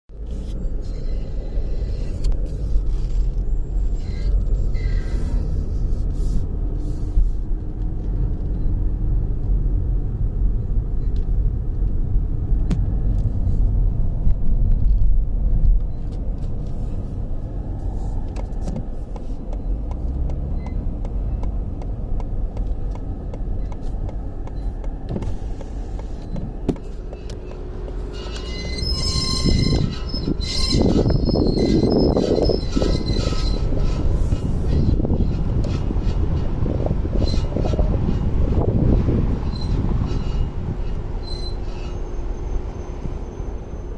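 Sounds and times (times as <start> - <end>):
car engine rumbling: 0.1 - 43.9
faint high squeal: 0.8 - 2.2, 3.4 - 5.6, 27.1 - 35.4, 39.4 - 43.9.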